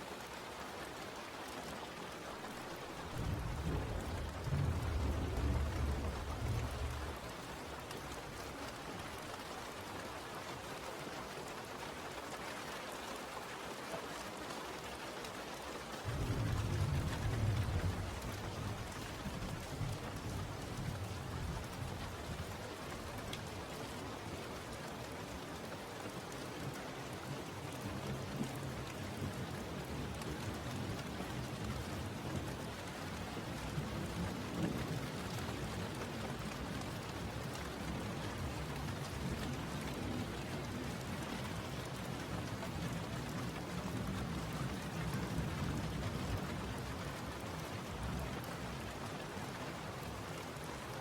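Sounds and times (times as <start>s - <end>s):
steady rain: 0.0s - 51.0s
thunder rumbling: 3.1s - 7.3s, 16.1s - 22.6s.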